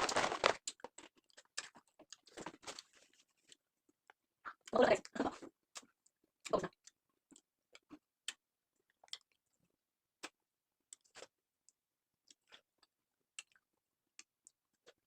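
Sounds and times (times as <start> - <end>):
person chewing snacks: 0.0 - 3.6.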